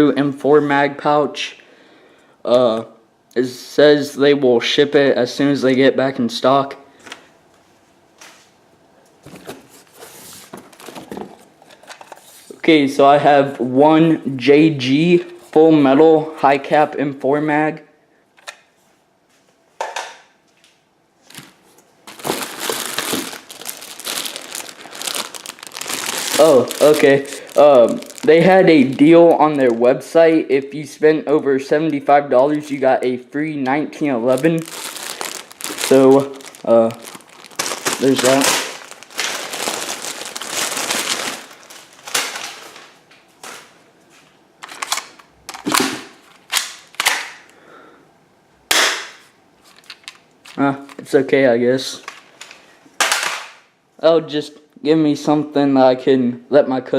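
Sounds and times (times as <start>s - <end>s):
packing material crinkling: 9.5s - 12.6s, 21.2s - 30.8s, 34.0s - 43.7s.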